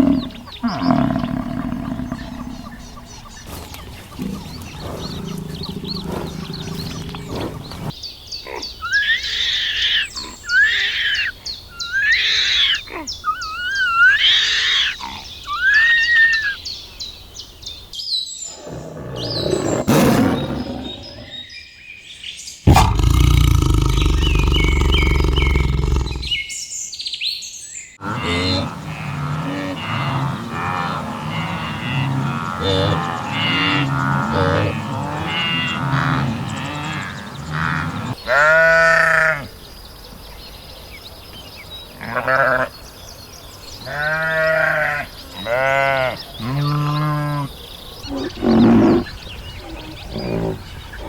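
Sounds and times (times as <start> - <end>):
deep roar-like animal call: 0.0 - 7.9, 18.5 - 21.4, 22.7 - 26.4, 28.0 - 38.2, 46.4 - 51.0.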